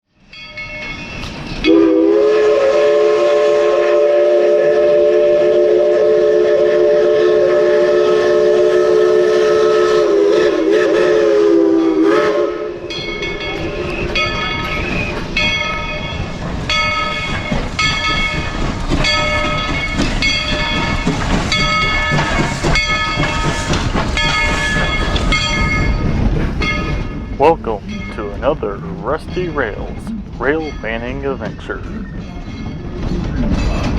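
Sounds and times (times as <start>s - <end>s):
train rolling: 0.1s - 33.9s
steam locomotive chime whistle: 0.2s - 33.9s.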